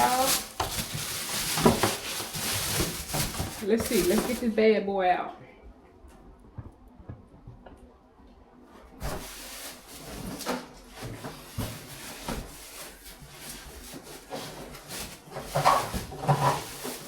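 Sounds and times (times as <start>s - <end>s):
cardboard rubbing and scraping: 9.0s - 17.0s.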